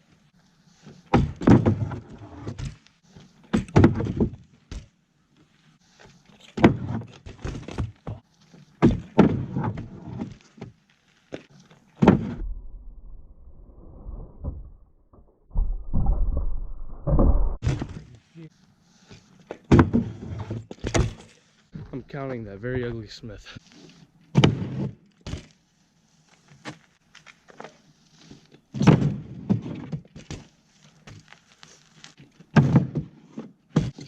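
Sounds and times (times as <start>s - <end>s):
bike thudding on ground: 6.5s - 12.5s, 19.6s - 21.4s
low rumble: 12.3s - 17.6s.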